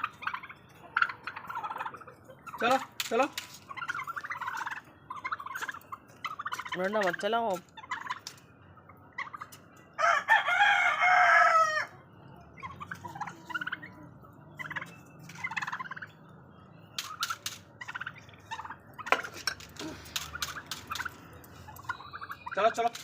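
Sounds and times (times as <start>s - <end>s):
chickens clucking: 0.0s - 23.0s
loud poultry call: 10.0s - 14.0s.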